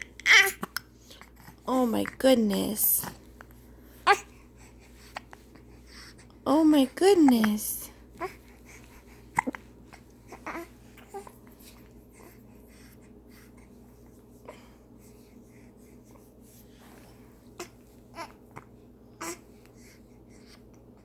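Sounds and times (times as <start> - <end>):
baby vocal noises: 0.0 - 0.8, 4.0 - 4.4, 9.3 - 11.5
soft breathing: 3.0 - 6.5, 7.2 - 20.8.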